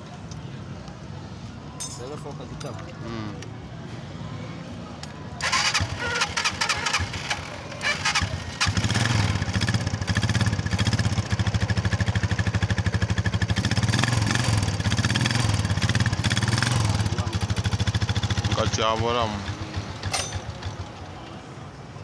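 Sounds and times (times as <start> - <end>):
motorcycle engine starting: 5.4 - 21.3.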